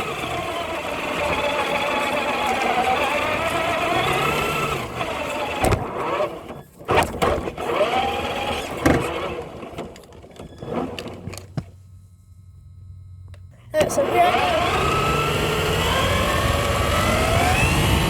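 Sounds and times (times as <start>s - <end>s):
electric motor whining: 0.0s - 11.7s, 12.4s - 18.0s
toy truck knocking over ground: 1.7s - 11.7s.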